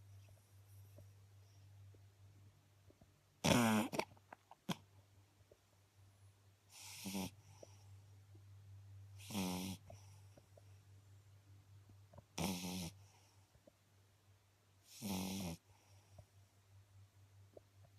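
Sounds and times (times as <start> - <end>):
puppy snoring: 3.4 - 4.9, 6.7 - 7.8, 9.2 - 10.4, 12.2 - 13.4, 14.8 - 16.2.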